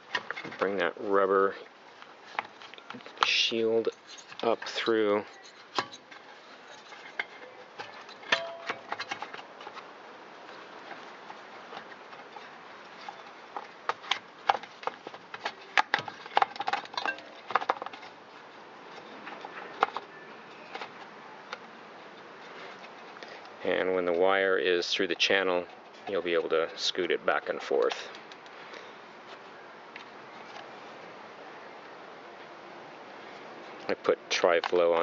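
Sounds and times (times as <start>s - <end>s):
faint steady hiss: 0.0s - 35.0s.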